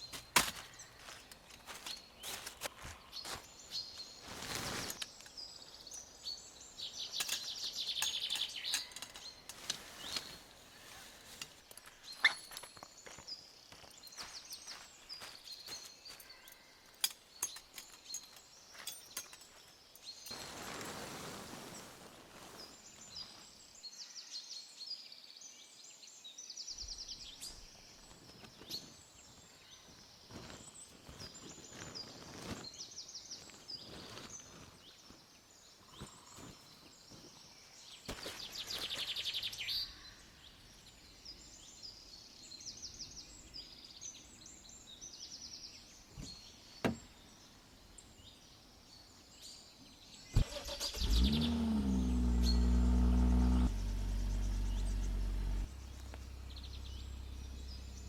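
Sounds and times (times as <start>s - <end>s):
small birds chirping and trilling: 0.0s - 21.0s, 21.7s - 58.0s.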